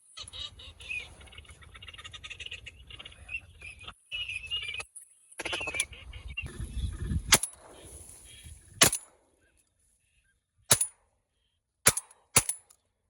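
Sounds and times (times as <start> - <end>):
shotgun blasts: 7.3 - 8.0, 8.8 - 9.1, 10.7 - 10.9, 11.9 - 12.6.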